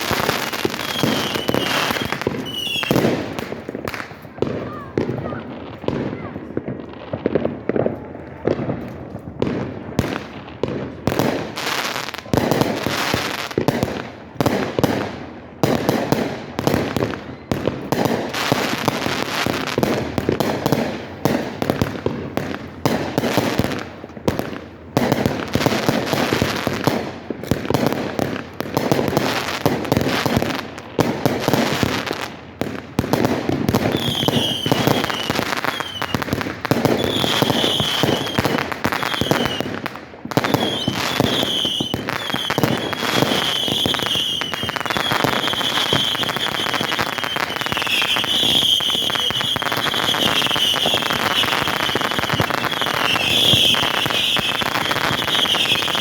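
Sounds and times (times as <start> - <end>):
firework high squeals: 0.0 - 3.1, 33.7 - 36.2, 36.9 - 39.7, 40.4 - 56.0
fireworks bangs and bursts: 0.0 - 56.0.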